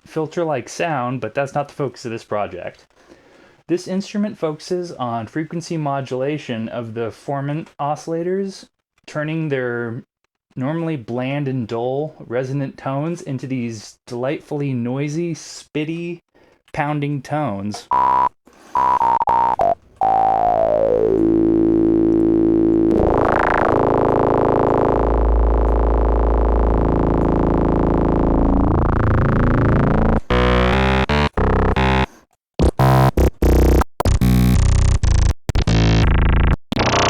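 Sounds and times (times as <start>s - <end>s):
deep synth bass: 17.8s - 37.0s
noisy spitty synthesizer tones: 17.9s - 37.0s.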